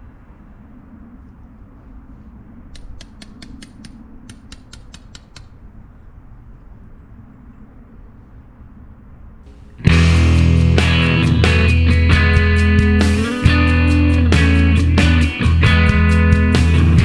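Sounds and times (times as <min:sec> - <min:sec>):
rapid sharp clicks: 0:02.8 - 0:05.6
steady low rumble: 0:09.6 - 0:17.0.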